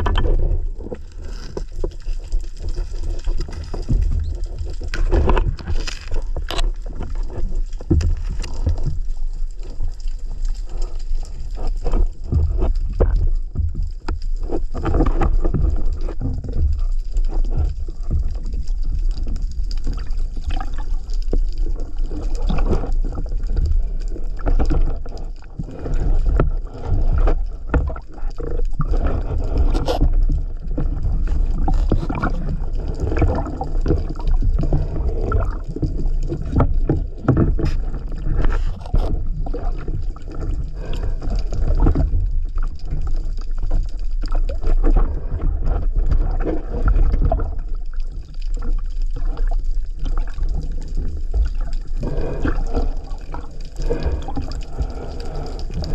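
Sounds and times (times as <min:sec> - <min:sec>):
water sloshing and gurgling: 0:00.0 - 0:55.9.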